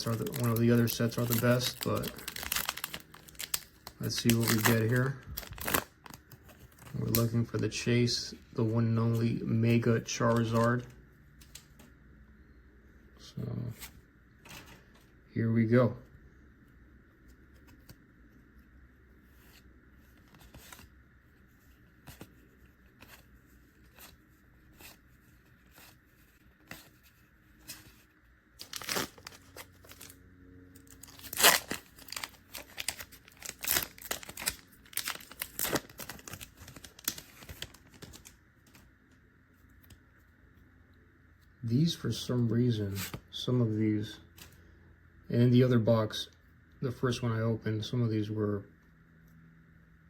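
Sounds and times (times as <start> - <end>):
foil wrapper tearing and crinkling: 0.0 - 7.6, 28.6 - 30.2, 30.8 - 38.8.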